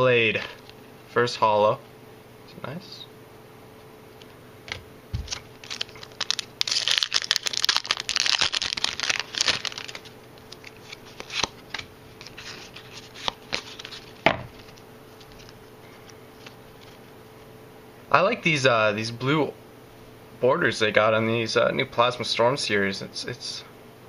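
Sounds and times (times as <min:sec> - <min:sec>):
cards rustling: 0:05.2 - 0:17.2
foil wrapper tearing and crinkling: 0:05.3 - 0:17.0.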